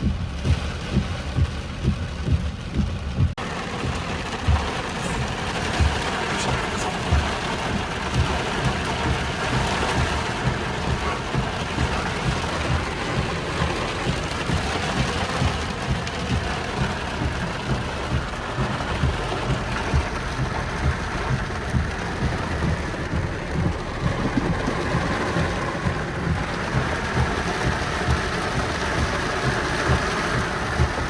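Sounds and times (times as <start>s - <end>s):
heavy rain: 0.0s - 31.0s
wind buffeting microphone: 22.0s - 26.2s.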